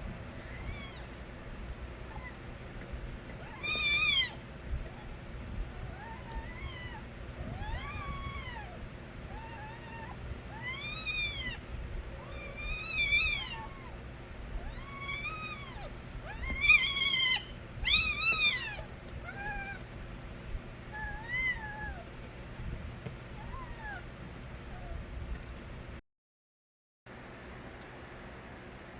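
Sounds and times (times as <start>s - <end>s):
kittens meowing: 0.3s - 20.0s, 20.9s - 22.3s, 23.3s - 24.1s.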